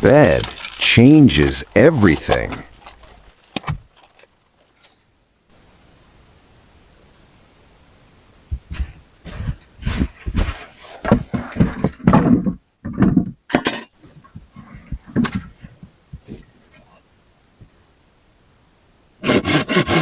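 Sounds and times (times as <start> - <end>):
materials knocking and thudding: 0.0 - 4.3, 10.0 - 13.4
rustling scrapes: 0.0 - 5.1, 8.6 - 12.2.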